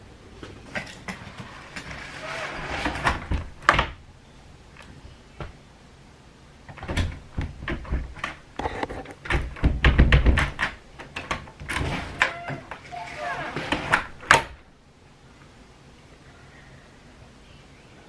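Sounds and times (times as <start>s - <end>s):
door knocks and thumps: 2.8s - 4.0s, 6.7s - 8.4s, 9.2s - 14.6s.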